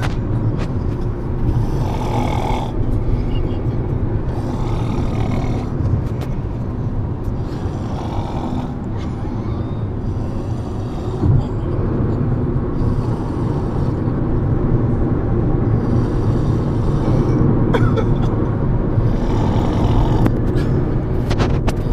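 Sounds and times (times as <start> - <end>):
steady low rumble: 0.0 - 21.9
heavy snoring: 1.4 - 2.9, 4.2 - 5.9, 7.2 - 9.4, 10.0 - 11.7, 12.6 - 15.0, 15.6 - 17.5, 18.9 - 20.5.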